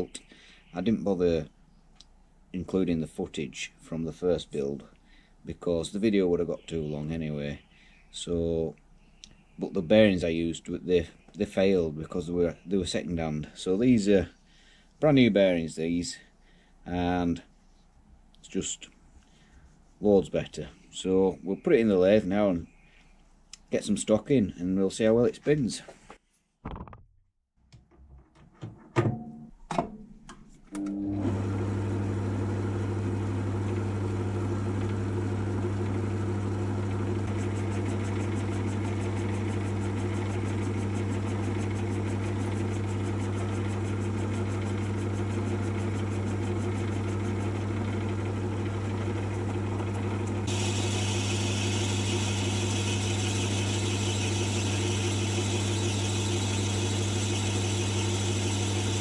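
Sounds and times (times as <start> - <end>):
lathe motor humming: 31.1 - 59.0.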